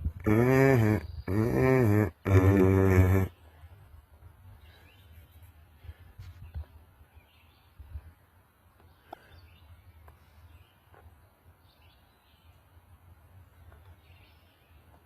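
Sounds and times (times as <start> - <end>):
bumps on the microphone: 0.0 - 3.3.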